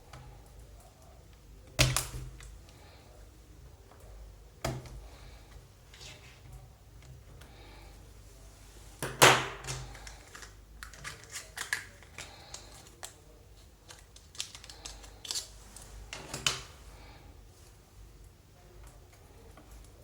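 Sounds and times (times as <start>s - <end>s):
small hard parts clicking and scraping: 9.7s - 13.2s, 13.8s - 16.5s.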